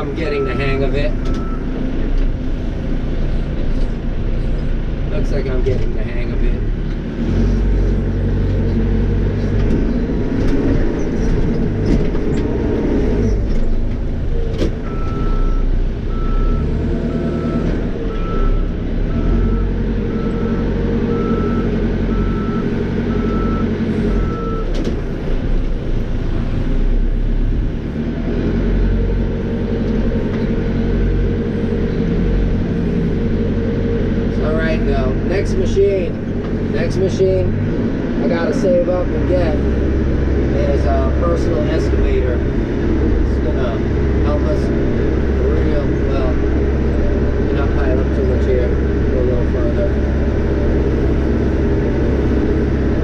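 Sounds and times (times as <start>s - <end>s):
backhoe diesel engine running: 0.0s - 53.0s
reverse alarm beeping: 17.3s - 24.7s.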